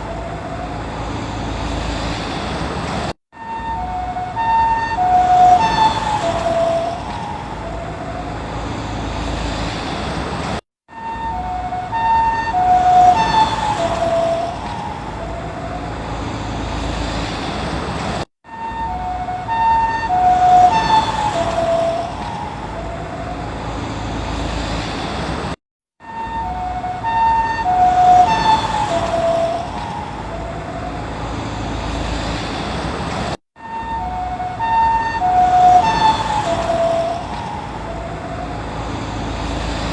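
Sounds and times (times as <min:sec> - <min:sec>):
ambulance siren passing: 0:00.0 - 0:02.0, 0:03.3 - 0:09.8, 0:10.9 - 0:17.1, 0:18.4 - 0:24.7, 0:26.0 - 0:32.3, 0:33.6 - 0:39.9
vehicle rumble: 0:00.0 - 0:39.9.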